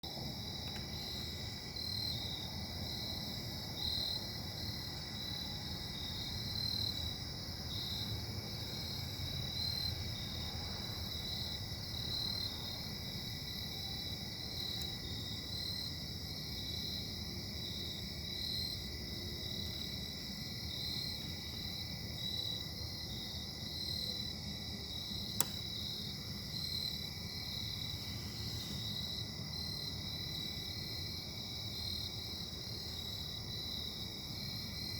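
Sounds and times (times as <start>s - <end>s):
sharp click: 25.4s - 25.6s.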